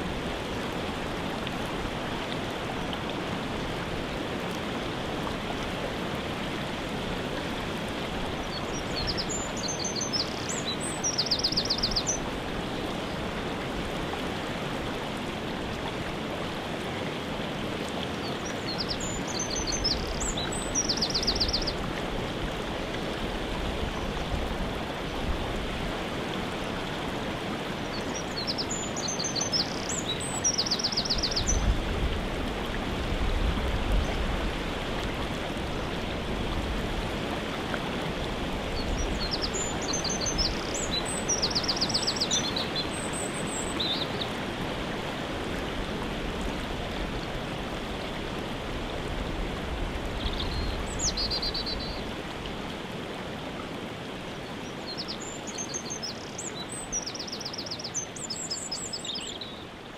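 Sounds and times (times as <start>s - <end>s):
songbird singing with trill: 8.5s - 12.2s, 18.4s - 21.8s, 27.9s - 31.6s, 38.8s - 44.3s, 54.9s - 59.6s.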